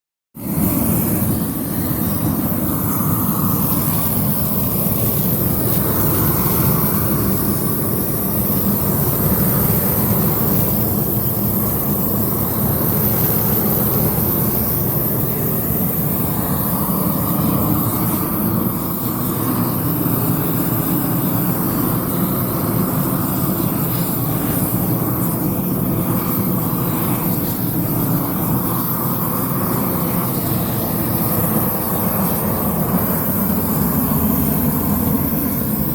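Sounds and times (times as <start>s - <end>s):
roofing burner running: 0.4s - 35.9s.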